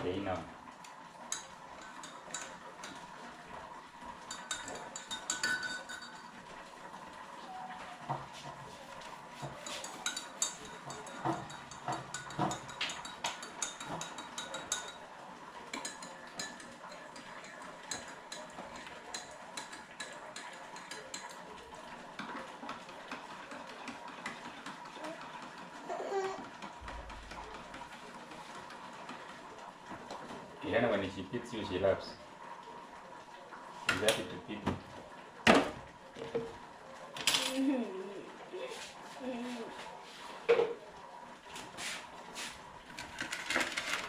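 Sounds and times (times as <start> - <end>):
cutlery and dishes clinking: 1.3 - 3.0, 4.2 - 6.3, 9.4 - 15.0, 15.7 - 21.5, 37.2 - 37.6, 43.0 - 44.0.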